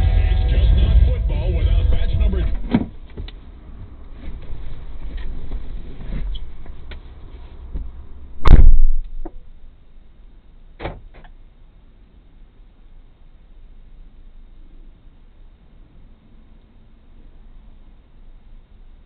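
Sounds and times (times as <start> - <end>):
car door thump: 2.5 - 3.3.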